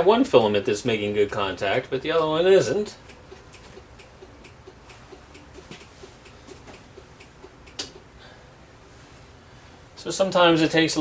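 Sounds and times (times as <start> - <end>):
turn-signal flasher clicking: 1.1 - 8.1.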